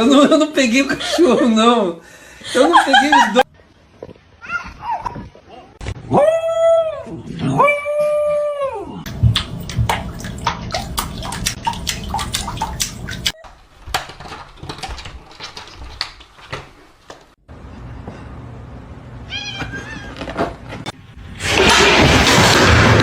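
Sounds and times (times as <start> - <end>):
cat meow: 19.2 - 20.3.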